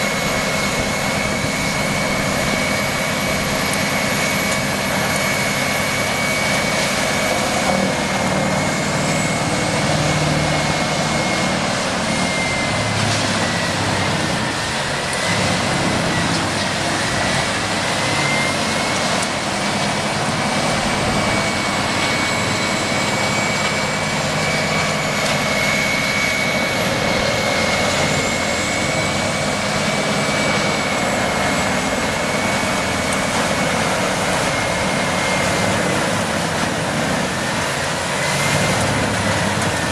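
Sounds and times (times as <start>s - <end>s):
heavy machine running: 0.0s - 39.9s
high whine: 0.0s - 39.9s
rushing noise: 0.0s - 39.9s.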